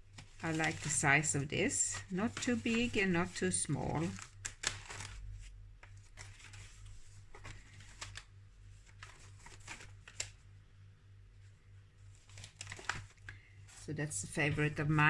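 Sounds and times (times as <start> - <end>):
paper pages rustling: 0.1 - 10.4, 12.0 - 15.0.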